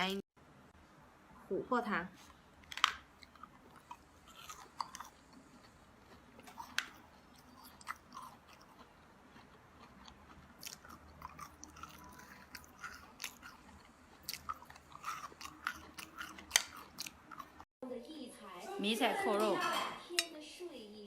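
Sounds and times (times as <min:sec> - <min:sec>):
person chewing hard candy: 0:03.1 - 0:17.7.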